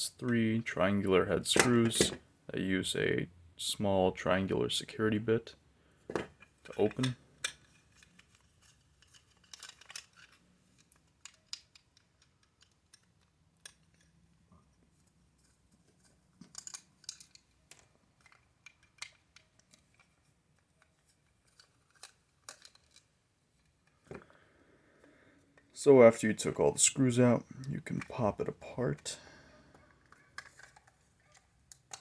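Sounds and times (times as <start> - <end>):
screwdriver clicking and scraping plastic: 16.0 - 24.1, 29.7 - 32.0.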